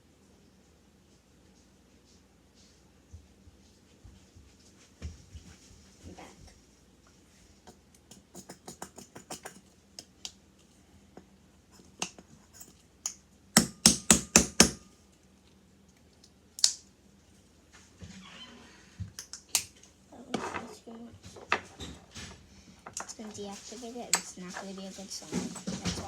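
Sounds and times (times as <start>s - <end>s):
loud sharp snaps: 16.6s - 16.9s.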